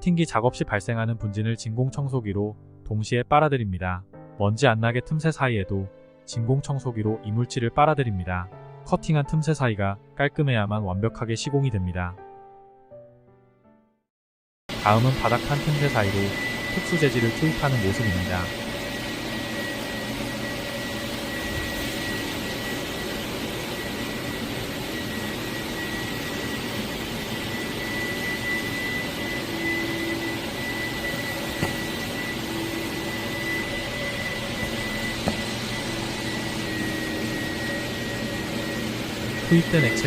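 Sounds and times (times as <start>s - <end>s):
machine motor whining: 14.7s - 40.0s.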